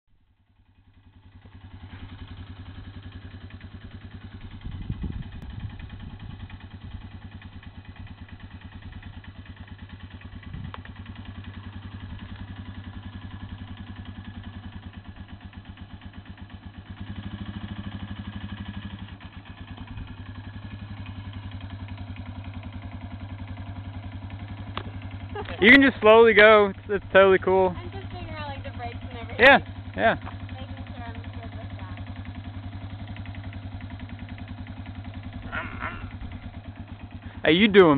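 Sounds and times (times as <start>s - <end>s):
motorcycle engine idling: 0.1s - 37.9s.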